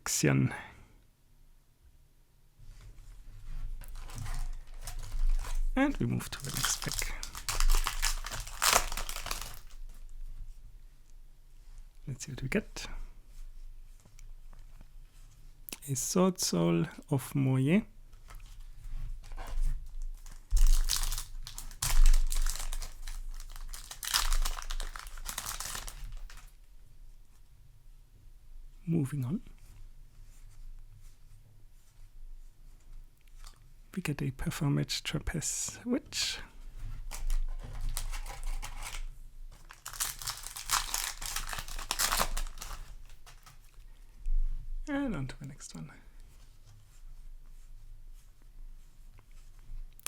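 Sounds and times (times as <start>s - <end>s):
wrapper crinkling: 3.8s - 10.0s, 19.8s - 26.6s, 37.0s - 43.8s.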